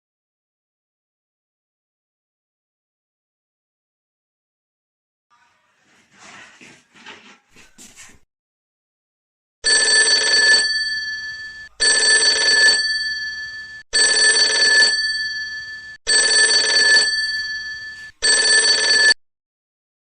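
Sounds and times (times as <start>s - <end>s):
alarm clock bell ringing: 9.7s - 19.2s.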